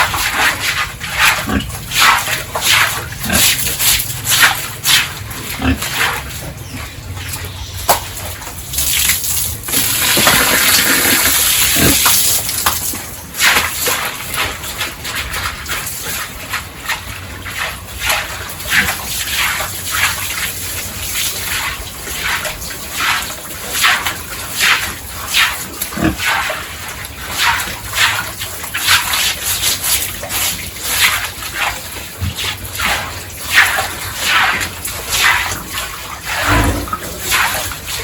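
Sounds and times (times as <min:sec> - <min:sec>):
water gushing: 0:00.0 - 0:38.0
pigs squealing and grunting: 0:00.3 - 0:07.7, 0:09.7 - 0:12.3, 0:24.6 - 0:28.4, 0:32.2 - 0:37.8.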